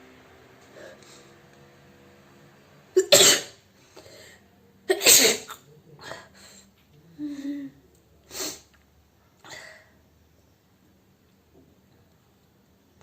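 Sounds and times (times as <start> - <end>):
woman breathing: 3.8 - 4.5, 6.0 - 8.4.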